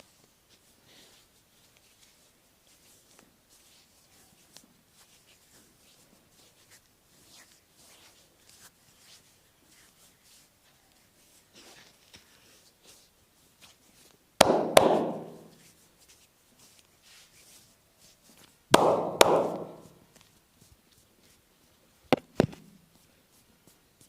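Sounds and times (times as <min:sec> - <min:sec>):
hands striking a back: 0:14.4 - 0:15.6, 0:18.7 - 0:20.0.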